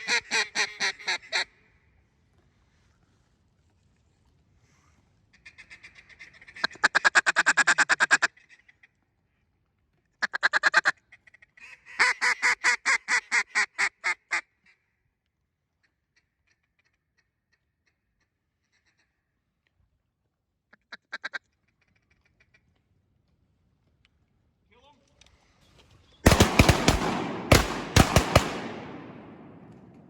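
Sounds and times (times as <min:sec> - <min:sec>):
duck call quacks: 0:00.0 - 0:01.6, 0:05.4 - 0:08.6, 0:10.2 - 0:14.8, 0:20.8 - 0:22.6.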